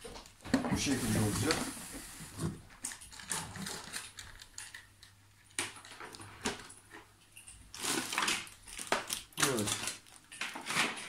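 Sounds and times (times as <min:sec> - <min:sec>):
packaging rustling: 0:00.8 - 0:06.8, 0:07.6 - 0:11.0
toy parts clicking and knocking: 0:02.9 - 0:06.2.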